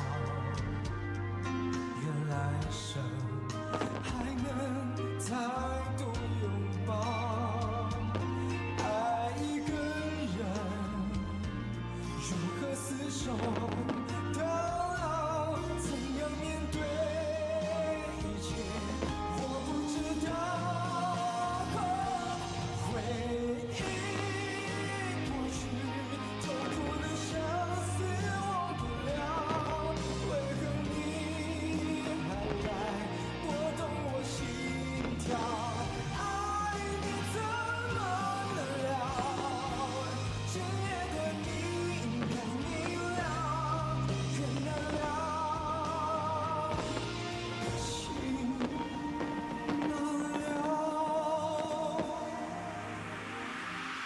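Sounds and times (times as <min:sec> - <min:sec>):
pop song with vocals: 0:00.0 - 0:54.0
steady bass line: 0:13.2 - 0:49.4.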